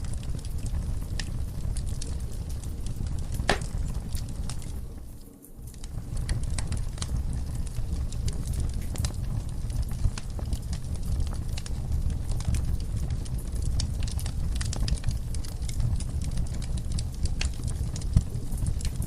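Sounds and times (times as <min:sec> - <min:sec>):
wood fire crackling and popping: 0:00.0 - 0:19.0.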